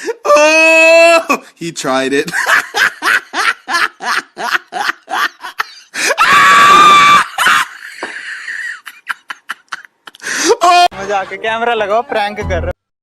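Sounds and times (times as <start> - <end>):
people laughing: 2.3 - 6.2, 7.2 - 10.2.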